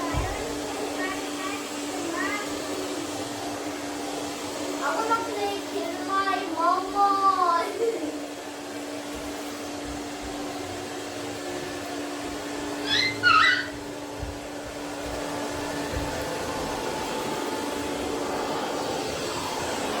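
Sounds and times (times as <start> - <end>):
robot vacuum cleaner humming: 0.0 - 20.0
short high-pitched squeaks: 12.8 - 13.8.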